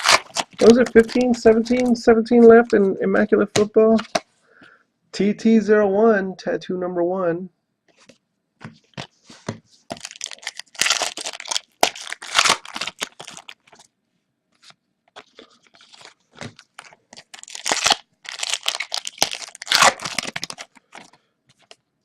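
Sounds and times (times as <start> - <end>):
wrappers tearing and crinkling: 0.0 - 2.0, 9.9 - 13.9, 15.2 - 21.8.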